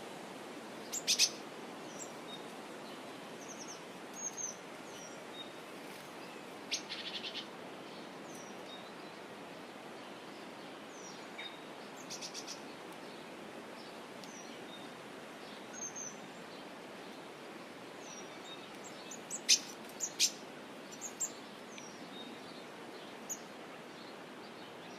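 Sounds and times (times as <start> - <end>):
steady background hiss: 0.0 - 24.9
birds chirping: 0.8 - 2.5, 18.0 - 23.5.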